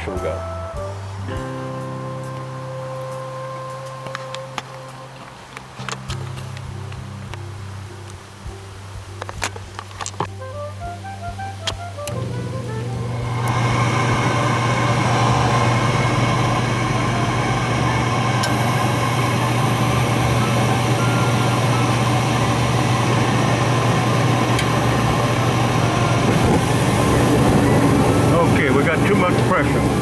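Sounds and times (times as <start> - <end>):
furnace motor hum: 12.0 - 30.0
burners and air rushing: 12.1 - 30.0.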